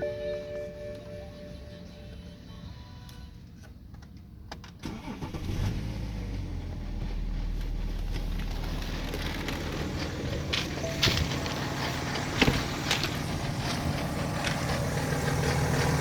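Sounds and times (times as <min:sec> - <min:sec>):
diesel engine cranking and idling: 0:03.9 - 0:16.0
engine rattle: 0:04.7 - 0:16.0.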